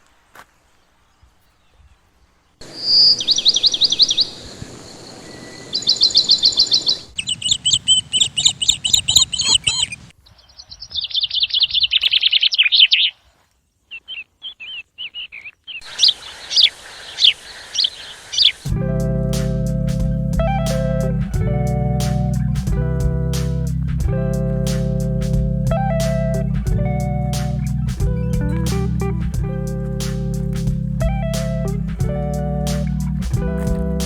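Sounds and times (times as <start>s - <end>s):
songbirds chirping and trilling: 0.9s - 18.7s
steady hiss: 15.8s - 34.0s.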